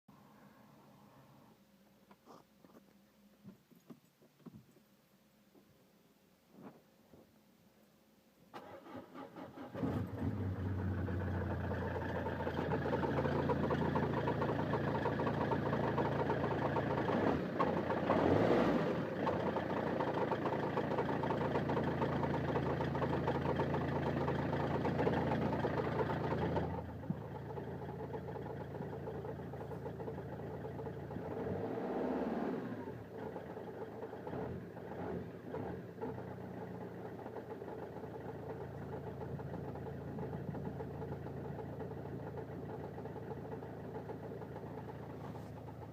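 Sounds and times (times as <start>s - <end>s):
diesel engine cranking and starting: 8.5s - 45.9s
diesel engine idling with rattle: 9.4s - 45.9s.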